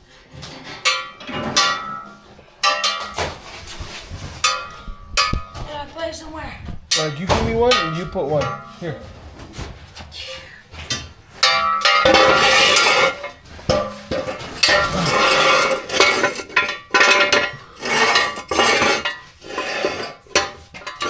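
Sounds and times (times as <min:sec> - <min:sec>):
metal jack stands clanking: 0:00.4 - 0:03.4, 0:10.8 - 0:21.0.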